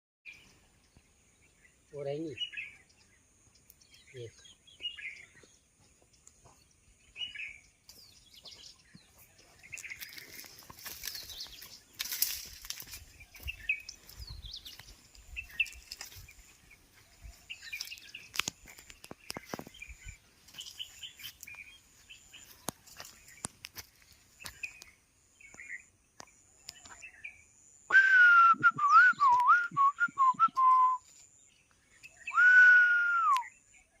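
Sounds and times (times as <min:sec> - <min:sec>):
small birds chirping: 0:00.3 - 0:27.9, 0:28.5 - 0:34.0
whistle falling in pitch: 0:27.9 - 0:31.0.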